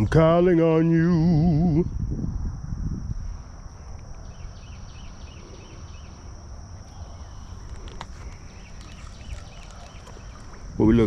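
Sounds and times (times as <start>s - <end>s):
wind rumble on microphone: 0.0s - 5.5s
high-pitched insect drone: 0.0s - 11.0s.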